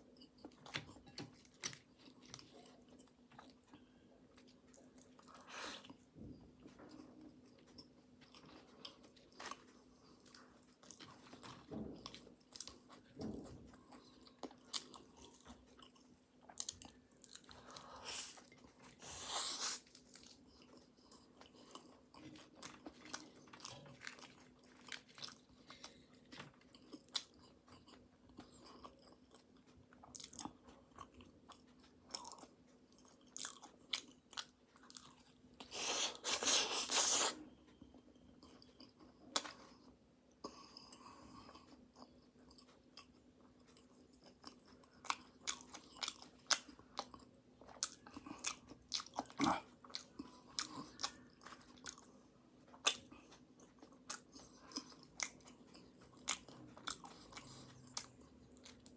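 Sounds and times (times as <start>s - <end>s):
person chewing flaky pastry: 0.0s - 58.9s.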